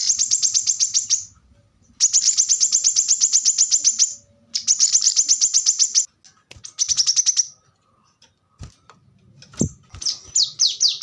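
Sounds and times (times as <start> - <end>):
bird singing rapid high trills: 0.0 - 1.4, 2.0 - 6.1, 10.0 - 11.0.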